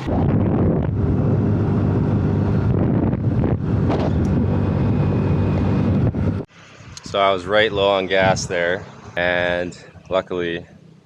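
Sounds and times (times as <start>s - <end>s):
wind buffeting microphone: 0.0s - 8.8s.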